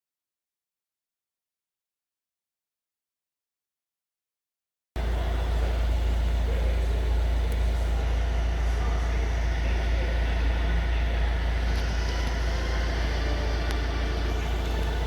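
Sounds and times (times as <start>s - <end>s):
van engine idling: 5.0s - 15.0s.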